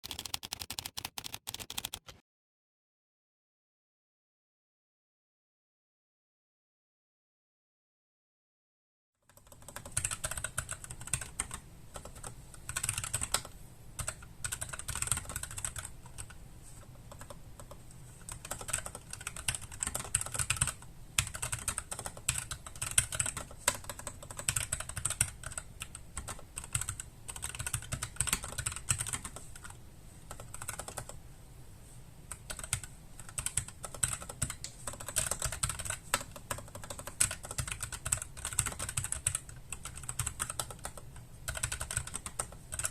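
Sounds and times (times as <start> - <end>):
mechanical keyboard typing: 0.0 - 2.2, 9.3 - 16.4, 17.1 - 31.2, 32.3 - 42.9.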